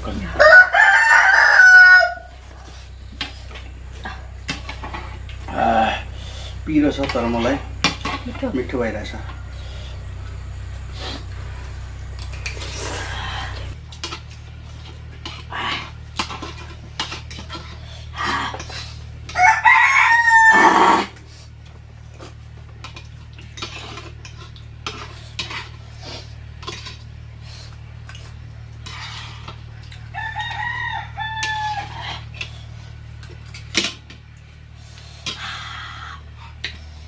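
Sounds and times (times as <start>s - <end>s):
rooster crowing: 0.1s - 3.0s, 8.9s - 10.6s, 19.3s - 21.2s, 29.7s - 32.3s.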